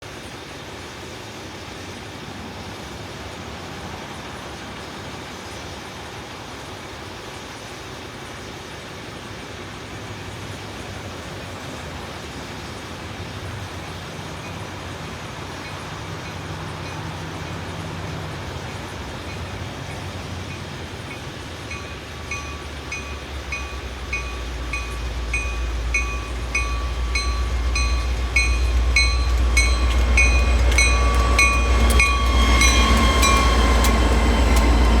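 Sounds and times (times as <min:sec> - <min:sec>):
train rumble: 0:00.1 - 0:35.0
deep locomotive rumble: 0:02.2 - 0:35.0
wheels clicking over track: 0:10.3 - 0:35.0.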